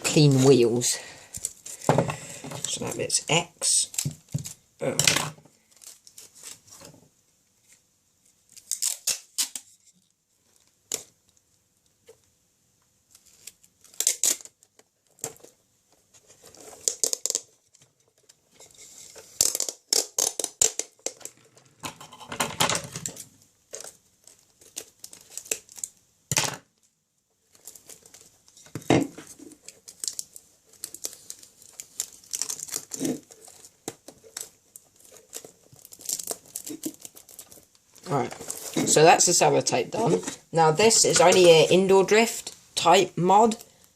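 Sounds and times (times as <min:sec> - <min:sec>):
tape tearing off roll: 0:08.5 - 0:09.8, 0:13.2 - 0:15.3, 0:16.6 - 0:17.6, 0:18.8 - 0:21.4.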